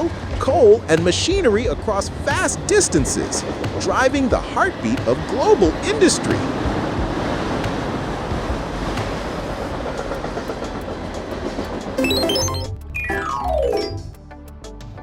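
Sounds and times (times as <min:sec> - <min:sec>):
freight train rumbling: 0:00.0 - 0:13.6
train wheel clicks: 0:00.8 - 0:12.6
chime jingle: 0:12.0 - 0:14.1.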